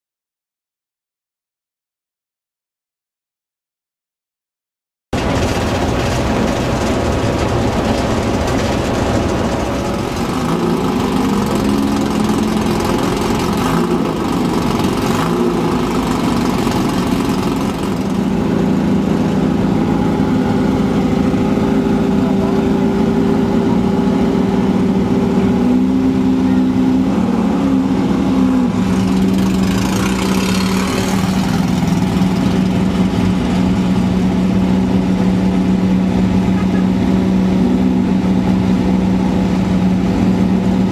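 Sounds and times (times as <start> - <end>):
buggy engine running: 5.2 - 40.9.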